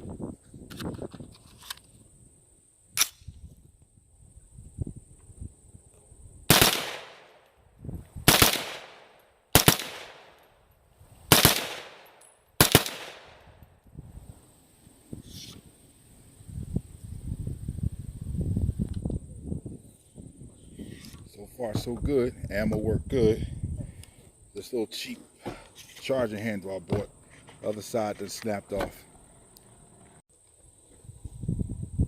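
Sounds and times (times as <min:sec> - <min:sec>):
rifle shots echoing: 0:06.5 - 0:07.4, 0:08.3 - 0:10.4, 0:11.3 - 0:13.5.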